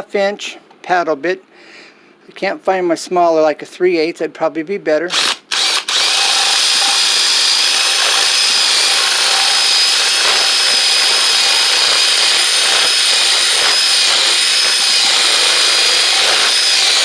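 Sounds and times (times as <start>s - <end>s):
electric drill boring into wood: 5.1s - 17.0s.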